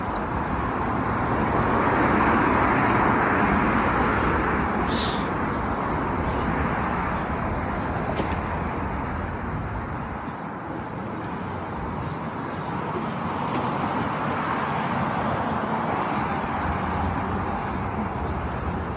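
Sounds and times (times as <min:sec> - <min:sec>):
vehicle passing: 0:01.0 - 0:10.0.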